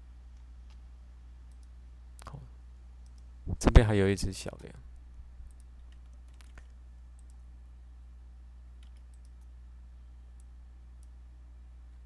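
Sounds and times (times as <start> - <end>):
steady low hum: 0.0 - 12.0
computer mouse clicks: 1.5 - 2.4, 3.0 - 3.3, 5.5 - 7.5, 8.8 - 9.5, 10.4 - 11.2.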